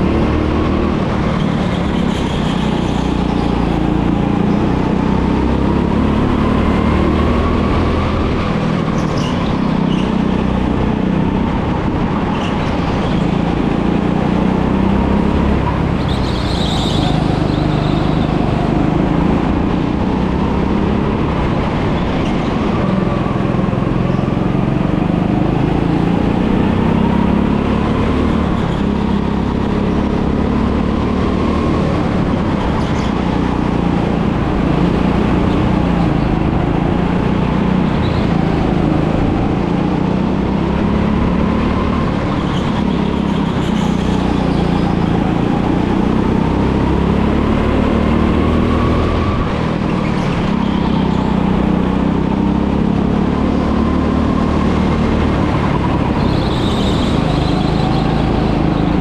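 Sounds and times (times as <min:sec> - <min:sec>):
go-kart engine running: 0:00.0 - 0:59.0.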